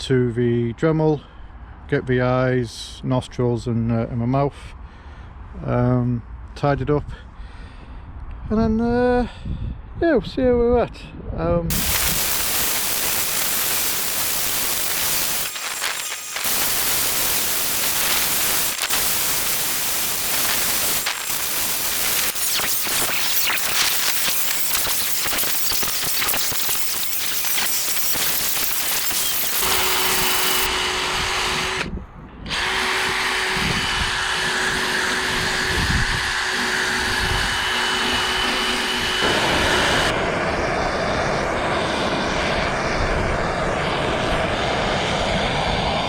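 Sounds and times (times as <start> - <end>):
power tool grinding wood: 11.7 - 31.9, 32.5 - 40.0
power tool whining: 11.7 - 42.9.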